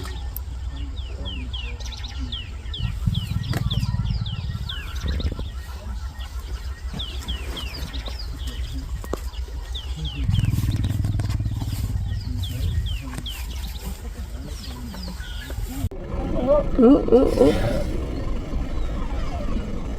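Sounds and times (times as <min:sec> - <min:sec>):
birds chirping: 0:00.0 - 0:19.9
steady low rumble: 0:00.2 - 0:19.9.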